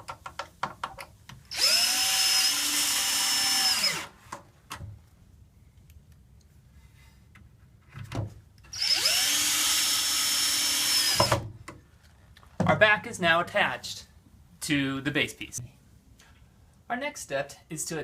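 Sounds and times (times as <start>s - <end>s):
cordless driver whining: 1.5s - 4.1s, 8.7s - 11.4s.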